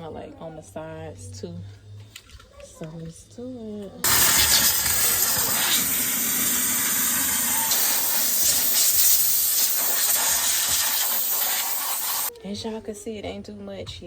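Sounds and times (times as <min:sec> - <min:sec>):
steam cleaner hissing: 0:04.0 - 0:12.3.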